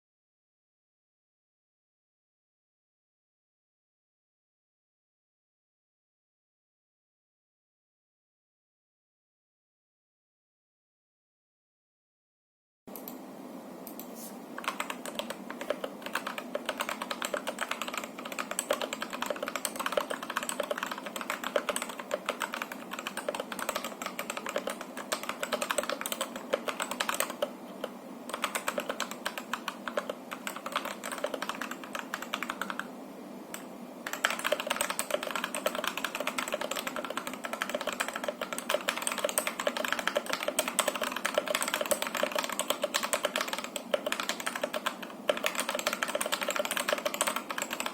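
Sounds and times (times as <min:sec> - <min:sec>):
mechanical keyboard typing: 0:14.6 - 0:32.9, 0:33.5 - 0:47.9.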